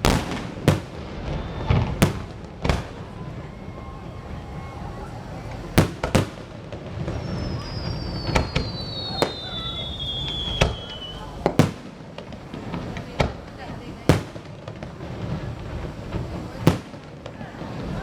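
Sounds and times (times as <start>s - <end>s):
fireworks banging: 0.0s - 18.0s
high whistle sliding down: 7.1s - 11.3s.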